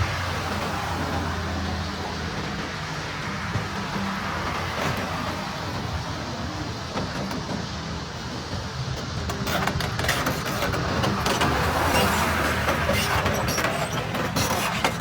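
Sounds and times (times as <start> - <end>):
excavator diesel engine running: 0.0 - 15.0
scraping and clatter: 9.3 - 15.0.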